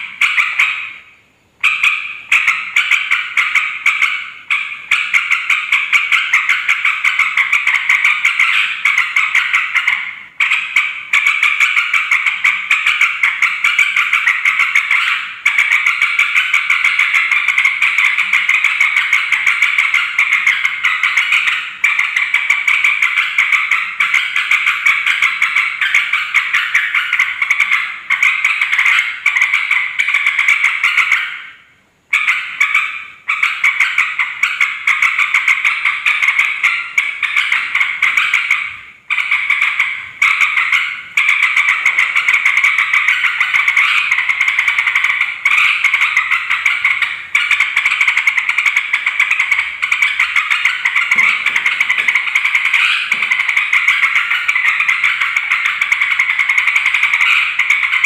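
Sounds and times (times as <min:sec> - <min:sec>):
bird chattering calls: 0:00.0 - 0:58.0.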